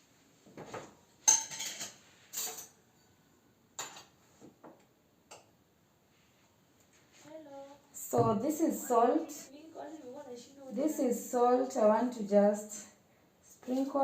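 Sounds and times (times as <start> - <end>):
dishes and utensils clinking: 1.2 - 3.2, 3.8 - 4.2.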